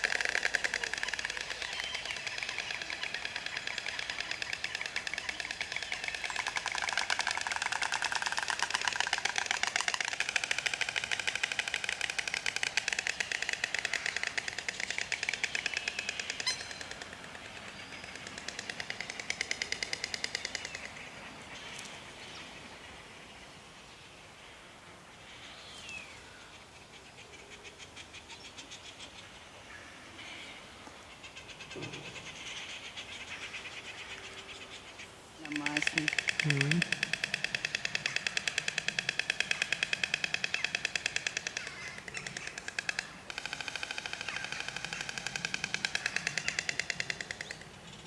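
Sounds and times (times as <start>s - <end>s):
storks bill-clattering: 35.4s - 47.5s.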